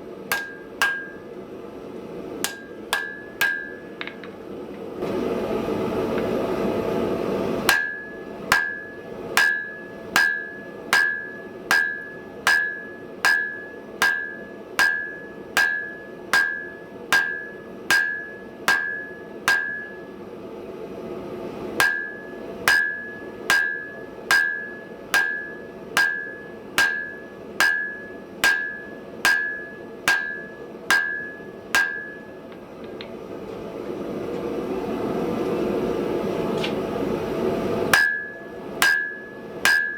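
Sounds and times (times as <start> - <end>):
hammer ringing on steel anvil: 0.3 - 1.2, 2.4 - 4.3, 7.7 - 20.1, 21.8 - 32.6, 38.0 - 39.9.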